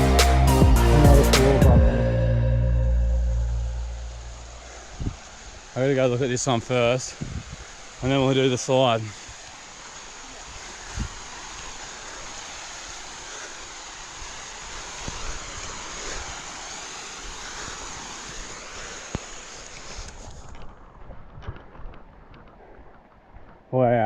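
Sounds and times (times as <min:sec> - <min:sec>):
waterfall rushing over rocks: 0:03.4 - 0:20.5.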